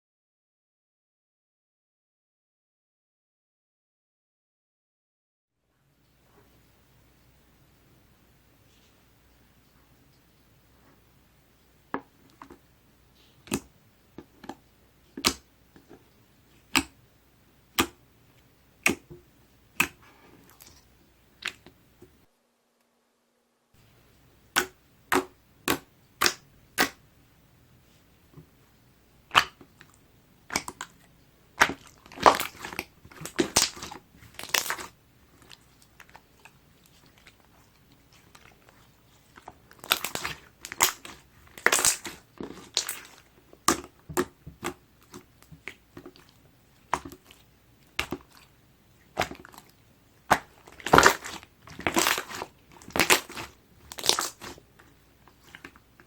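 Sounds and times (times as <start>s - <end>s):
slime squelching and popping: 13.2s - 17.0s, 17.7s - 18.0s, 18.8s - 22.2s, 24.5s - 27.0s, 29.2s - 56.0s.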